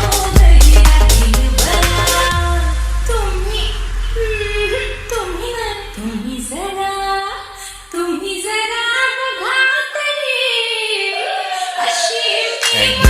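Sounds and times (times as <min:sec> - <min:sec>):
sparse backing music: 0:00.0 - 0:06.7
low bass: 0:00.0 - 0:07.9
woman singing: 0:00.0 - 0:13.0.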